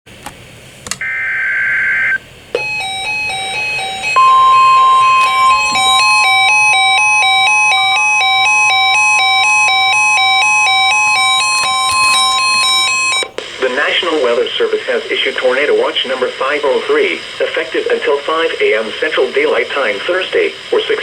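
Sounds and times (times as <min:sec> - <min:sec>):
warning alarm tone: 0:01.0 - 0:13.3
data burst: 0:01.0 - 0:14.3
two-note electronic chime melody: 0:02.6 - 0:13.2.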